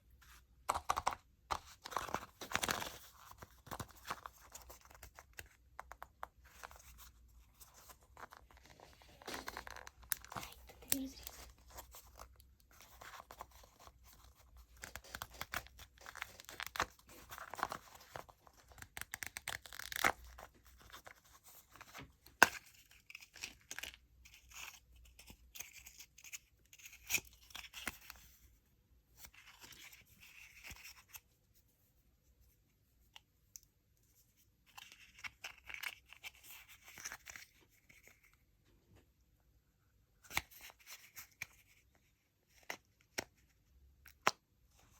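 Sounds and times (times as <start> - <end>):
candy wrappers crinkling: 8.3 - 12.2.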